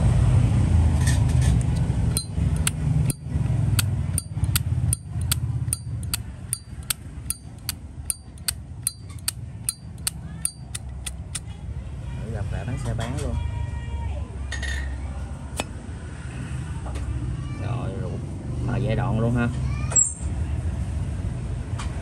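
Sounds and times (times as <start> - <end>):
lighter lid clacking open and shut: 1.7 - 3.2, 4.2 - 11.4.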